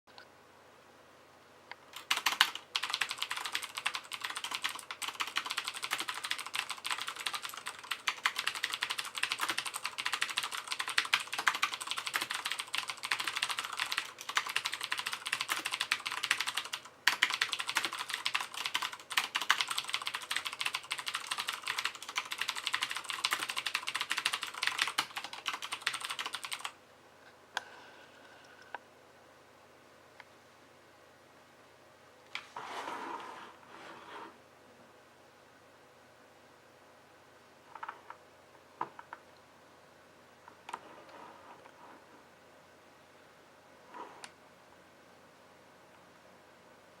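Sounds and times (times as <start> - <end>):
fast typing on mechanical keyboard: 2.0 - 26.8.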